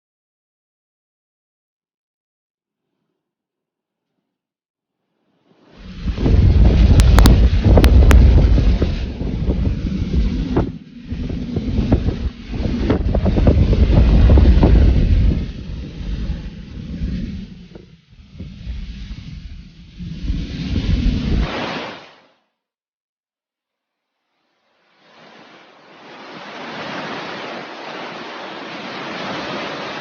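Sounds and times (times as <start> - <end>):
wind buffeting microphone: 5.8 - 21.6.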